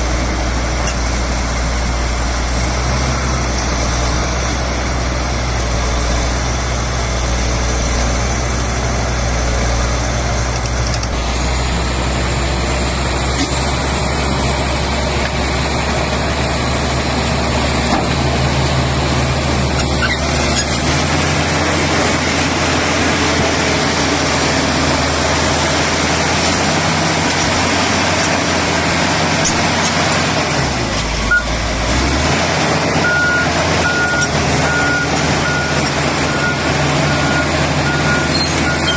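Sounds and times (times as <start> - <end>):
bulldozer diesel engine running: 0.0 - 38.9
reversing alarm beeping: 31.3 - 31.6, 33.0 - 38.9.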